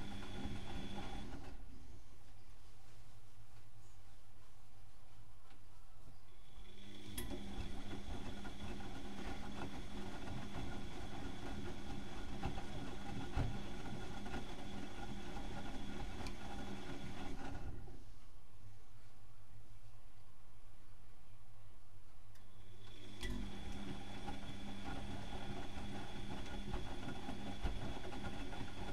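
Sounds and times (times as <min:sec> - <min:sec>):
washing machine motor hum: 0:00.0 - 0:01.7, 0:06.4 - 0:18.1, 0:22.6 - 0:28.9.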